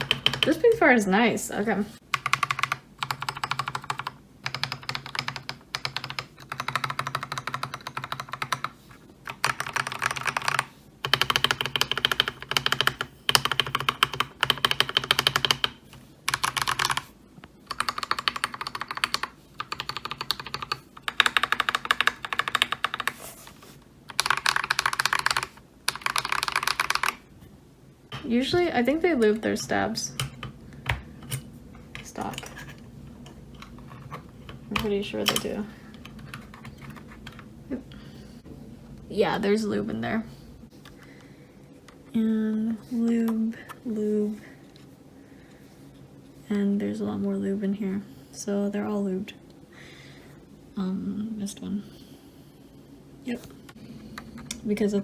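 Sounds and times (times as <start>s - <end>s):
mechanical keyboard typing: 0.0s - 0.8s, 2.1s - 17.1s, 17.7s - 23.2s, 24.1s - 27.3s, 30.1s - 37.5s.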